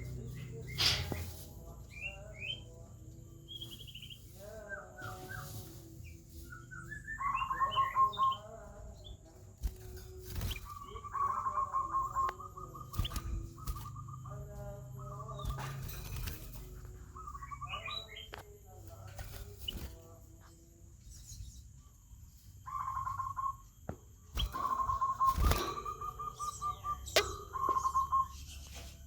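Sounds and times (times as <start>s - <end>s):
bulbul chirping and whistling: 6.4s - 8.5s, 10.4s - 14.3s, 22.6s - 28.8s.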